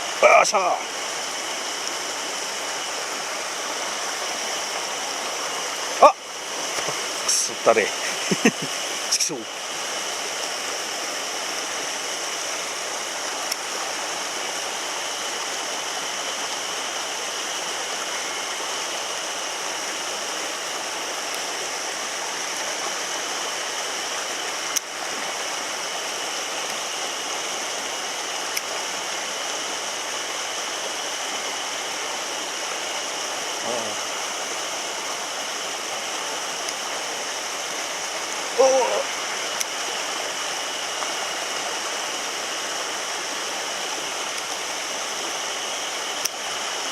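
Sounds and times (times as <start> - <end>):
stream water rushing: 0.0 - 46.9.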